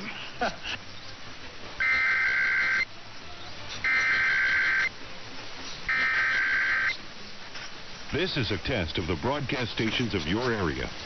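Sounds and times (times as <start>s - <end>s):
two-tone data warble: 1.8s - 2.9s, 3.8s - 4.9s, 5.9s - 7.0s.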